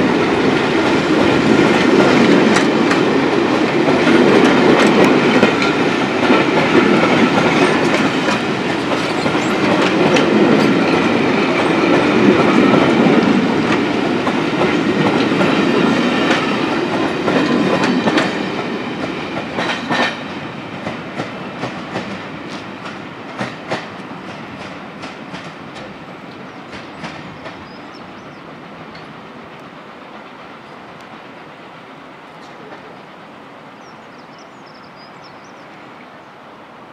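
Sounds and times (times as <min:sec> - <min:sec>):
train wheels clattering over rail joints: 0:00.1 - 0:27.8.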